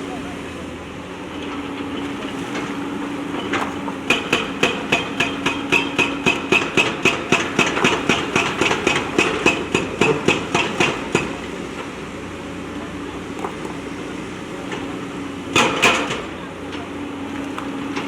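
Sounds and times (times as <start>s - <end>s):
diesel engine running: 0.0s - 18.0s
hydraulic breaker hammering stone: 3.4s - 11.8s, 15.5s - 16.4s.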